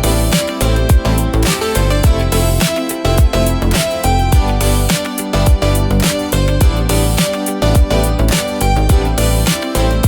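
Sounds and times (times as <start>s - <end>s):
bass kicks: 0.8s - 2.6s, 3.2s - 4.8s, 5.4s - 9.4s.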